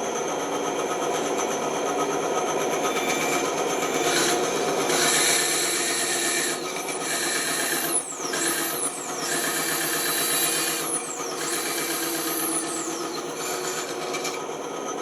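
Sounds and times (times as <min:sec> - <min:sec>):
bandsaw cutting wood: 0:02.9 - 0:14.5.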